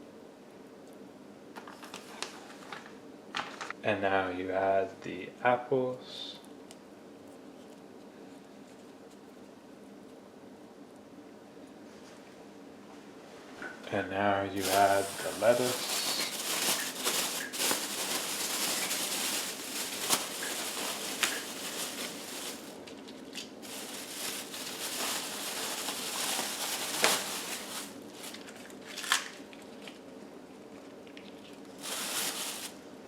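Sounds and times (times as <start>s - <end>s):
crisp lettuce snaps: 14.6s - 23.6s, 28.2s - 30.1s
lettuce leaves rustling: 14.6s - 29.3s, 31.6s - 32.8s.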